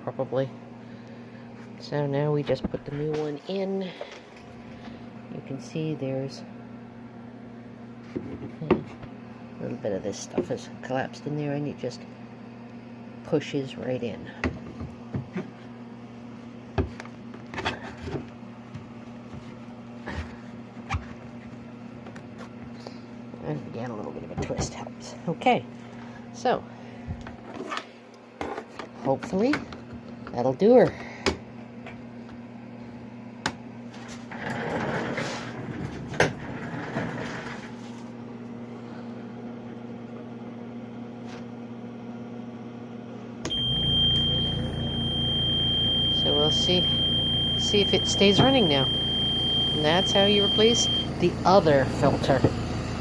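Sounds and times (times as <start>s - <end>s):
steady low hum: 0.0s - 53.0s
low hum: 43.5s - 53.0s.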